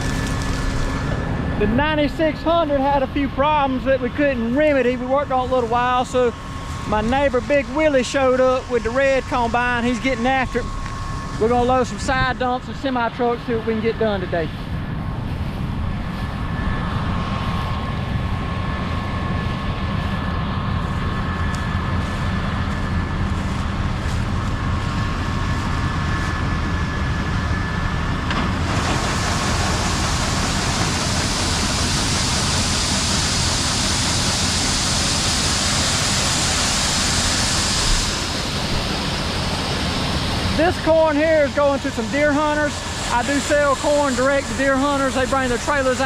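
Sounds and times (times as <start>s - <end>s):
combine harvester engine whining: 0.0s - 46.0s
loud hiss: 28.6s - 46.0s.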